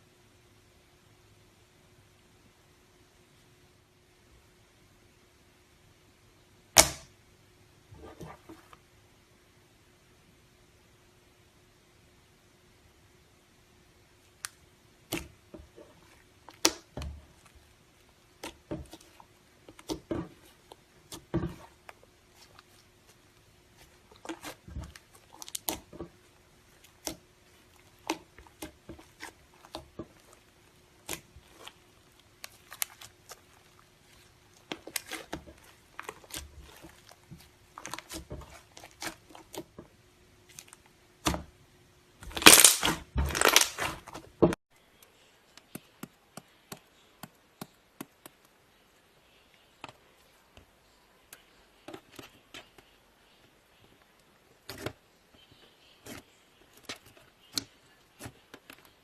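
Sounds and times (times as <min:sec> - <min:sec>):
faint steady hum: 0:00.0 - 0:59.0
slime squished by hand: 0:18.3 - 0:39.7, 0:42.2 - 0:44.2.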